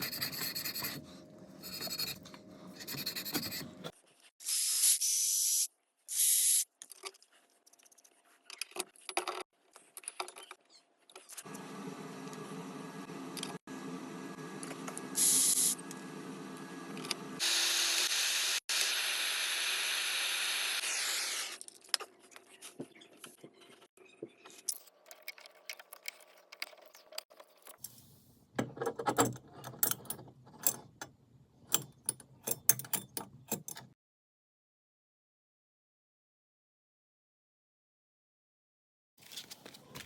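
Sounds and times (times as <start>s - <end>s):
metal parts and tools clicking: 28.8s - 31.0s, 31.7s - 34.0s.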